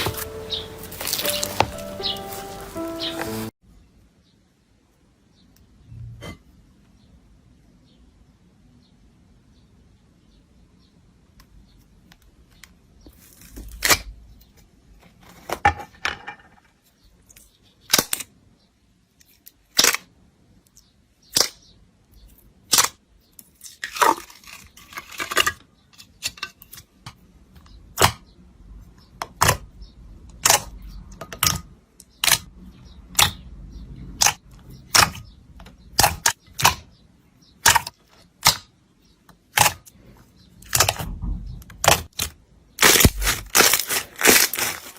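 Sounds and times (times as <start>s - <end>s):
sticky slime crackling: 0.0s - 3.5s, 30.3s - 32.5s, 39.5s - 39.9s, 40.6s - 41.1s, 41.7s - 44.9s.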